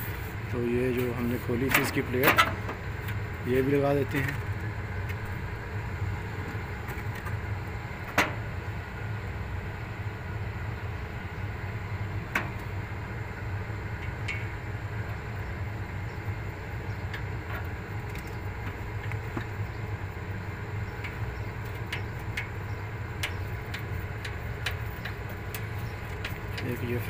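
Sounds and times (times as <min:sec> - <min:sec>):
low background rumble: 0:00.0 - 0:27.0.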